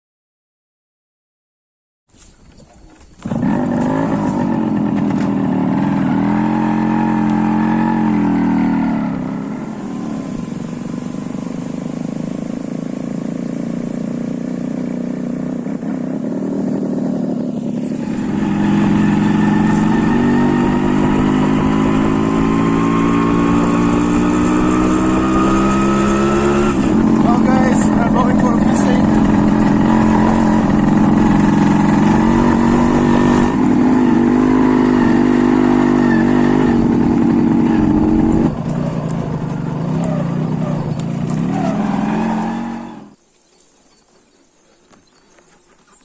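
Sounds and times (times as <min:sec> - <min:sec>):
motorcycle engine running: 0:03.0 - 0:43.2.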